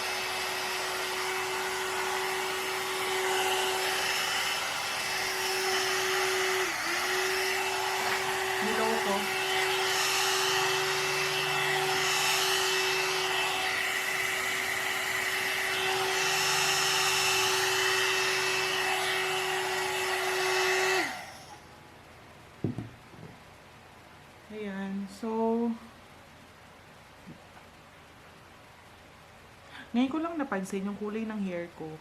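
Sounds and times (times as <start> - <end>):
motor spinning down: 0.0 - 21.6
hot air brush motor humming: 0.0 - 21.8
knock: 22.6 - 23.4.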